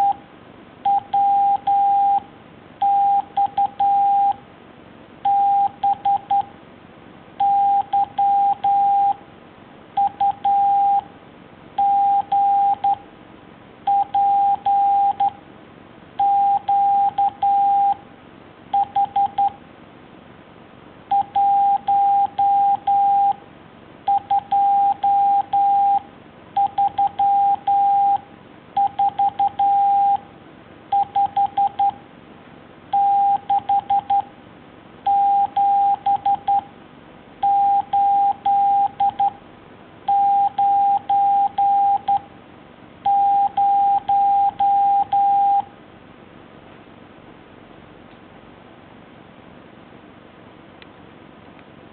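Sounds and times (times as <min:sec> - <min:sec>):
morse code beeps: 0:00.8 - 0:02.2, 0:02.8 - 0:04.4, 0:05.2 - 0:06.5, 0:07.4 - 0:09.2, 0:10.0 - 0:11.1, 0:11.8 - 0:13.0, 0:13.9 - 0:15.4, 0:16.2 - 0:18.0, 0:18.7 - 0:19.6, 0:21.1 - 0:23.4, 0:24.1 - 0:26.0, 0:26.6 - 0:28.2, 0:28.8 - 0:30.2, 0:30.9 - 0:32.0, 0:32.9 - 0:34.3, 0:35.1 - 0:36.7, 0:37.4 - 0:39.4, 0:40.1 - 0:42.2, 0:43.0 - 0:45.7.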